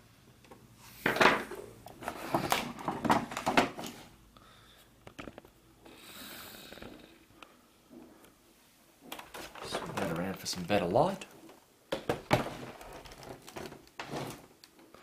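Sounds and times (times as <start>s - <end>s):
plastic panel creaking and scraping: 9.1s - 10.4s, 12.0s - 14.7s.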